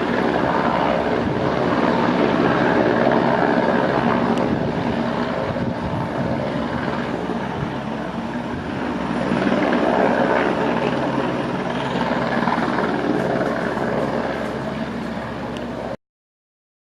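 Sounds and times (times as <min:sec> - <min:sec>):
helicopter rotor and engine drone: 0:00.0 - 0:16.0.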